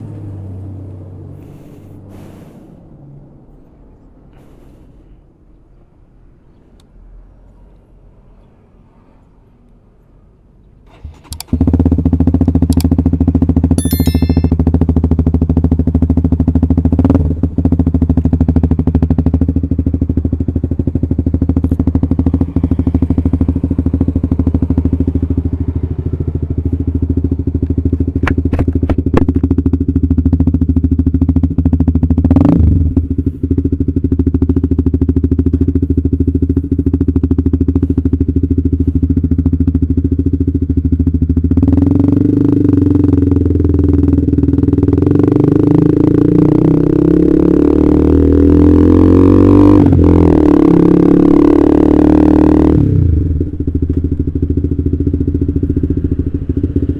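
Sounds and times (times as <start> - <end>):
motorcycle engine idling: 11.5 - 44.9, 53.0 - 56.9.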